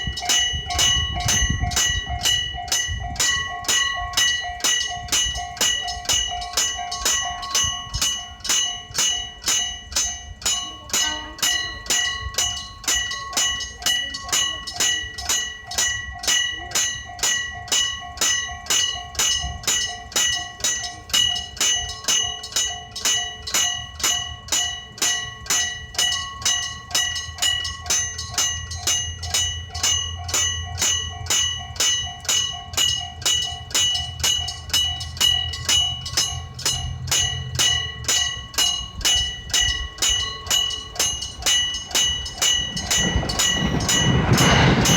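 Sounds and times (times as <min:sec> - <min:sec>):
level crossing bell ringing: 0:00.0 - 0:44.9
low rumble: 0:35.8 - 0:44.9.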